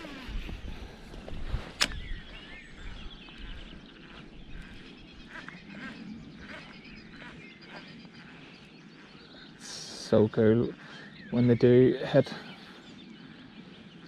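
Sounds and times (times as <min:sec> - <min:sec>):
wind rumbling on microphone: 0:00.0 - 0:09.6
birds calling: 0:00.0 - 0:14.0
sharp click: 0:01.7 - 0:02.2.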